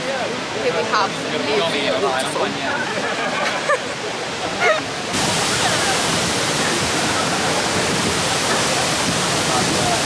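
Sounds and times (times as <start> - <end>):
waterfall rushing: 3.8 - 10.0.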